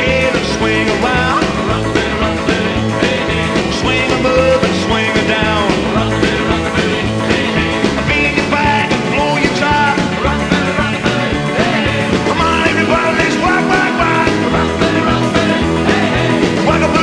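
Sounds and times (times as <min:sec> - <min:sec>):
loud rock music: 0:00.0 - 0:17.0
person singing: 0:00.0 - 0:17.0.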